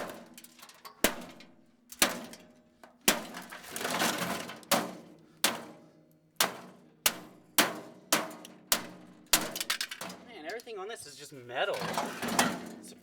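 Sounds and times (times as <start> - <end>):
debris rattling: 8.8 - 10.8, 11.6 - 13.0.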